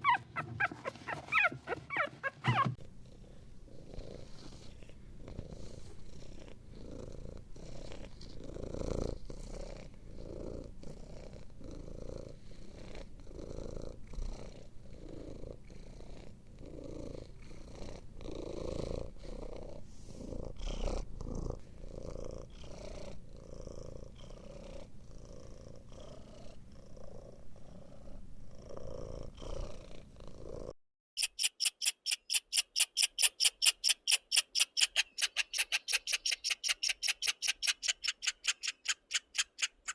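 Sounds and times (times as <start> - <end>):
cat purring: 0.0 - 30.8
fast high-pitched chirping: 31.2 - 39.9.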